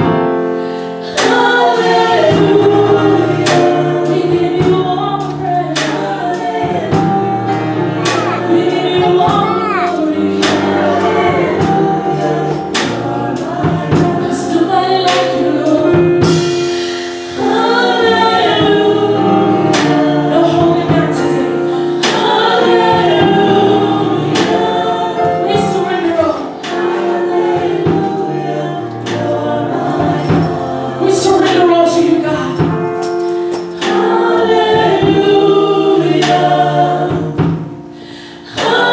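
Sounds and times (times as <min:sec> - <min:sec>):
band accompaniment: 0:00.0 - 0:38.9
gospel choir singing: 0:00.0 - 0:38.9
drum steady beat: 0:01.3 - 0:21.2.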